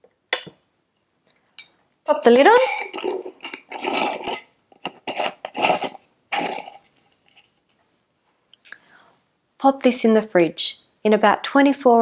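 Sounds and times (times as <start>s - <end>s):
metal lid scraping on glass jar: 2.1s - 7.4s.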